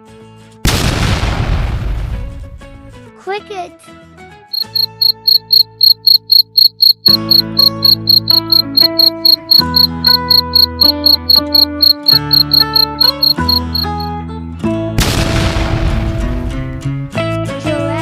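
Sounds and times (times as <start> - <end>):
cricket chirping: 4.6 - 14.1.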